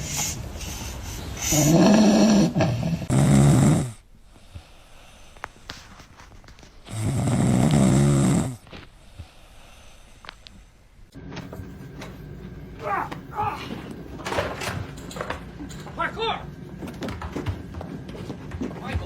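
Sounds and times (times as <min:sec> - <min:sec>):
dog snoring: 0:01.4 - 0:05.4, 0:06.8 - 0:10.1.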